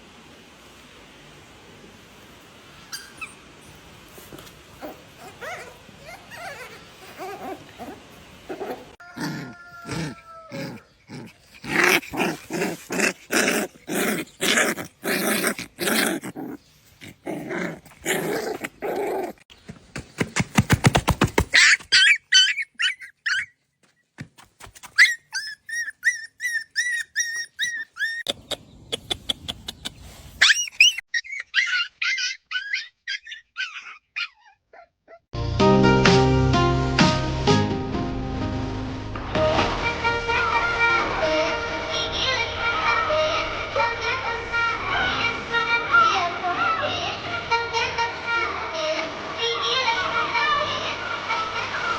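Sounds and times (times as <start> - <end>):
puppy barking and yipping: 2.9 - 3.8, 4.4 - 16.5, 21.4 - 23.6, 24.8 - 29.8, 30.4 - 35.2
music: 35.4 - 46.5.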